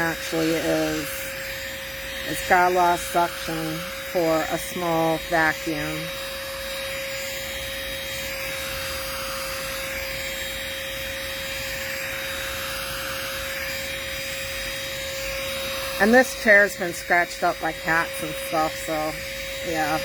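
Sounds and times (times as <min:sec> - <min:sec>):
handheld vacuum whining: 0:00.0 - 0:20.0.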